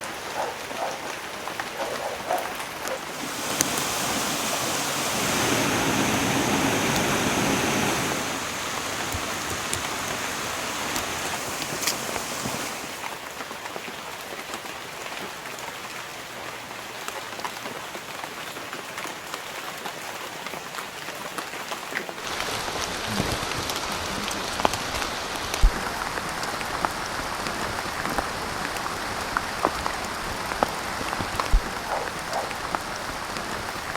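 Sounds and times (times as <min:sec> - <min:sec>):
rain hissing: 0:00.0 - 0:13.6, 0:22.1 - 0:33.9
raindrops ticking: 0:00.0 - 0:14.6, 0:22.0 - 0:33.9
heavy drips thudding: 0:23.4 - 0:33.9.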